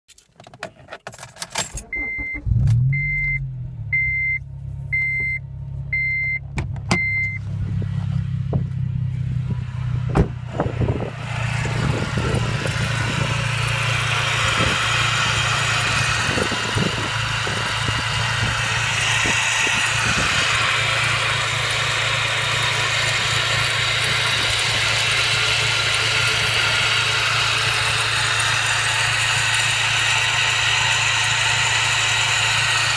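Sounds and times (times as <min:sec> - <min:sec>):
car engine starting and running: 0:00.1 - 0:32.9
warning chime beeps: 0:01.8 - 0:04.4
low engine hum: 0:01.8 - 0:32.9
steady rushing road noise: 0:06.6 - 0:32.9.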